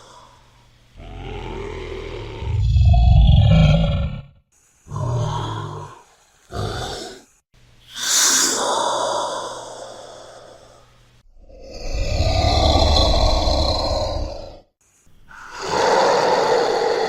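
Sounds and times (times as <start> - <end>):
breathy reptile calls: 1.0 - 7.3, 11.4 - 14.7.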